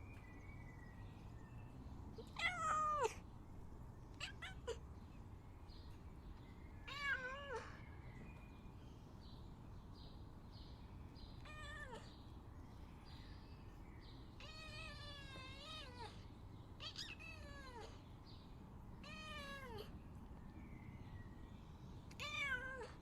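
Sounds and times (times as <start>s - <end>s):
cat meowing: 2.2s - 3.2s, 4.1s - 4.8s, 6.9s - 7.8s, 11.4s - 12.1s, 14.4s - 16.2s, 16.8s - 18.0s, 19.0s - 20.0s, 22.1s - 23.0s.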